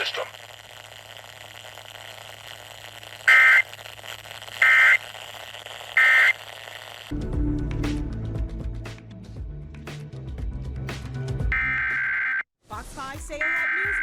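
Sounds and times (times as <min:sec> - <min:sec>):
harsh two-tone digital buzz: 0:00.0 - 0:07.1, 0:11.5 - 0:12.5.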